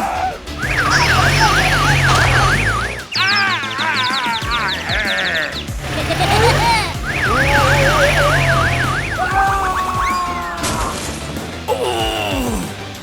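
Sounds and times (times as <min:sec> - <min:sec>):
police siren yelp: 0:00.0 - 0:03.5, 0:05.8 - 0:10.6
background music: 0:00.0 - 0:13.0
low engine rumble: 0:00.4 - 0:03.1, 0:05.7 - 0:09.8.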